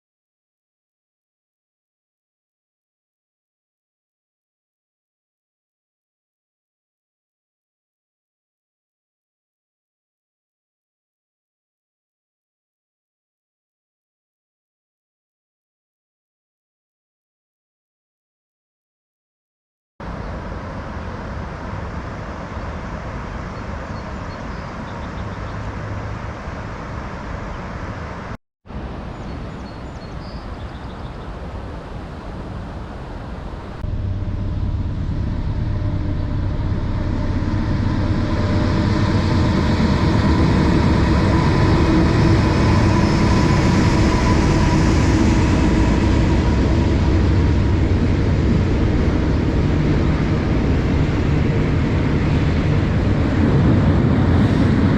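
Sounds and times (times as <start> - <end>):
diesel freight train rumbling: 33.0 - 54.9.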